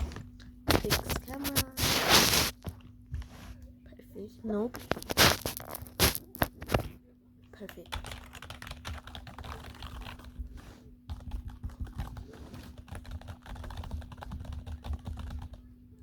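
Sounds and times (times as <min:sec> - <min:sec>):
rapid typing on keyboard: 0:07.6 - 0:15.7.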